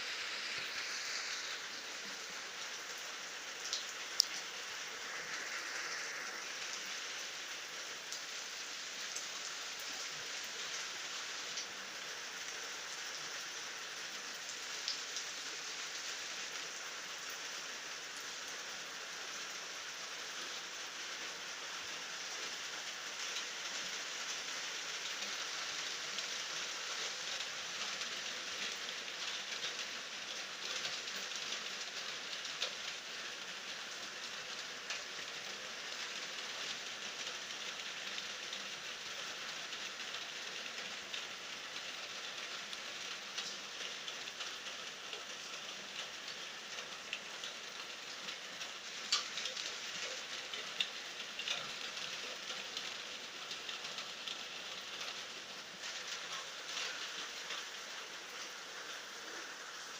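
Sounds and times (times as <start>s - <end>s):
steady rain hiss: 0.0s - 59.9s
raindrop ticks: 3.6s - 4.5s, 24.3s - 59.6s.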